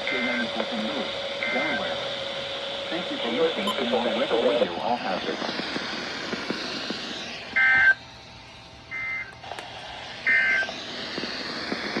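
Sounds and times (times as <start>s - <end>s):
digital data bursts: 0.0s - 0.6s
steady radio hiss: 0.0s - 12.0s.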